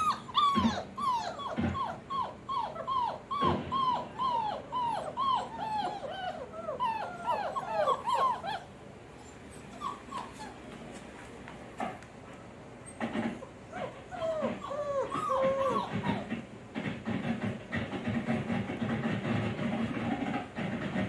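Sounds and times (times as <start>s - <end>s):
puppy whining: 0.0s - 11.4s, 12.8s - 16.5s.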